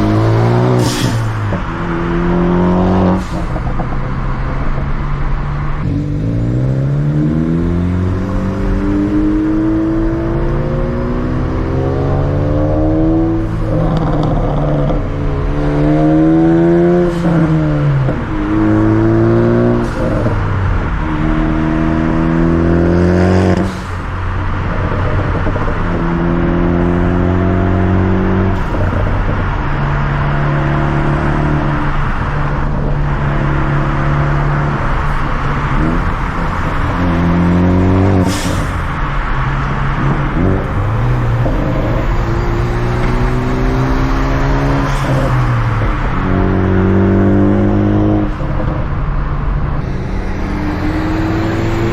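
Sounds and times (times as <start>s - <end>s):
car engine accelerating: 0.0s - 51.9s
road noise: 0.0s - 51.9s.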